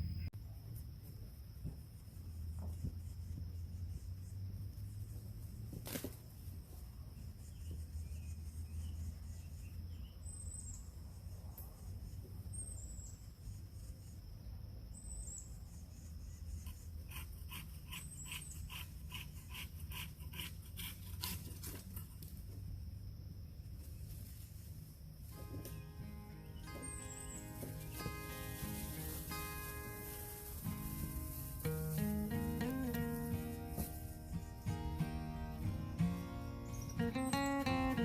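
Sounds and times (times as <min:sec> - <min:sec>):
high insect drone: 0:00.1 - 0:38.0
rhythmic rasping strokes: 0:25.4 - 0:38.0
short high bird chirps: 0:36.6 - 0:38.0.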